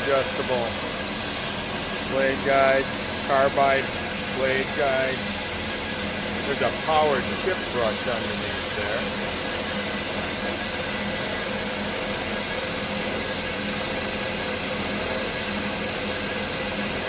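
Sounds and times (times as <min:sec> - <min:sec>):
bandsaw running: 0:00.0 - 0:17.0.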